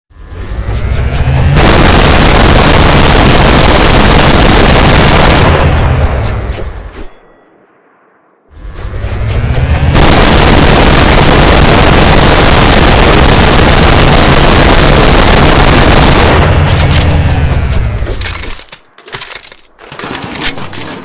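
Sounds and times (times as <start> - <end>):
minigun firing: 1.6 - 6.1, 9.9 - 17.3.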